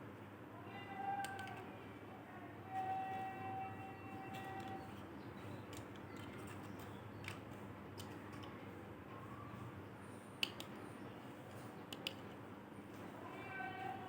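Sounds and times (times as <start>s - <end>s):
plastic toys clicking: 1.2s - 1.6s, 4.2s - 8.6s, 10.4s - 10.8s, 11.9s - 12.4s.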